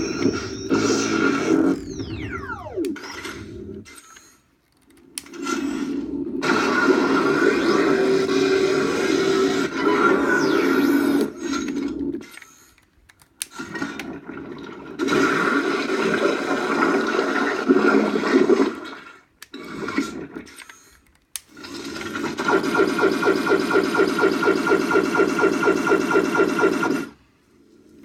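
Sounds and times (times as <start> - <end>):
pulsing electronic hum: 0.0 - 3.9.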